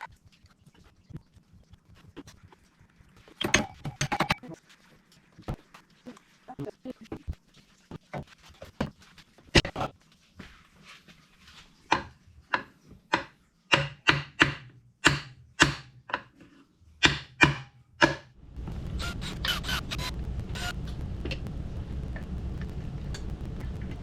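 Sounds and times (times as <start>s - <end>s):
steady rumbling noise: 18.4s - 24.0s.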